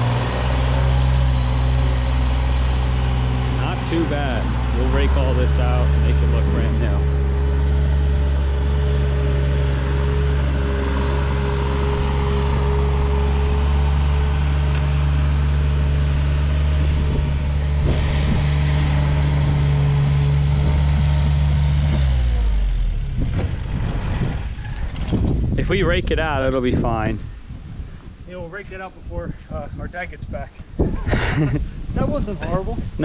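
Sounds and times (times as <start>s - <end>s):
diesel engine running: 0.0s - 25.6s.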